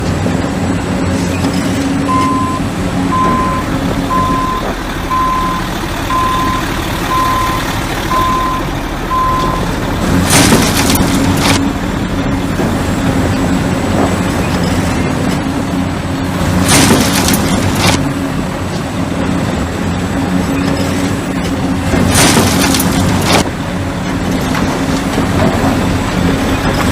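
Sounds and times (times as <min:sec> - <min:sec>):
diesel engine running: 0:00.0 - 0:26.9
reversing alarm beeps: 0:02.1 - 0:09.7.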